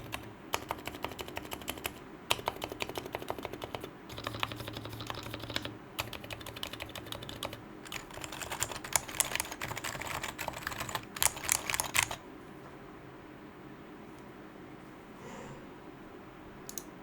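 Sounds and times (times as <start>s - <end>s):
fast typing on keyboard: 0.0s - 12.2s.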